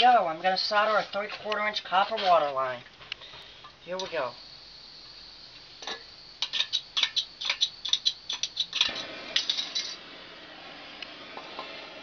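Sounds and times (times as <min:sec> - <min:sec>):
torch flame hissing: 0:04.1 - 0:12.0
igniter metallic clicks: 0:05.8 - 0:10.0.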